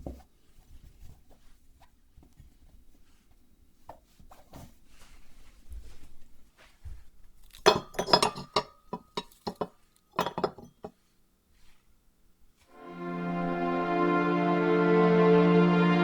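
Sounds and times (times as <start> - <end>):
tableware clinking: 7.7 - 10.9
tableware handling rustles: 7.7 - 10.9.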